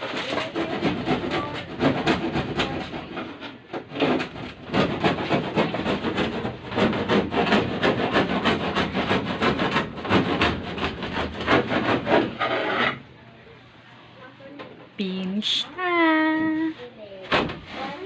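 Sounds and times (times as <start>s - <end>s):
hand tool scraping wood: 0.0s - 13.0s.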